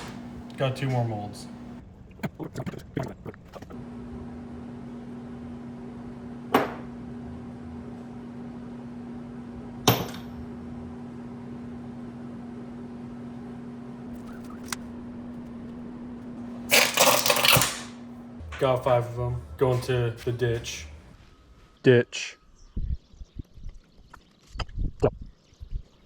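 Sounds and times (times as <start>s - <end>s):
electrical hum: 0.0s - 26.0s
loud noisy clatter: 16.7s - 18.7s.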